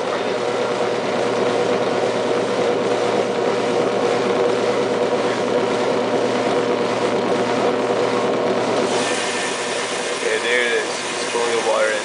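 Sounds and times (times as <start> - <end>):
washing machine filling with water: 7.7 - 12.0.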